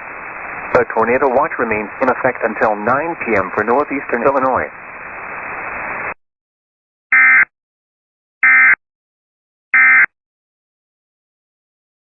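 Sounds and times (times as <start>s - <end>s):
radio hiss: 0.0s - 6.2s.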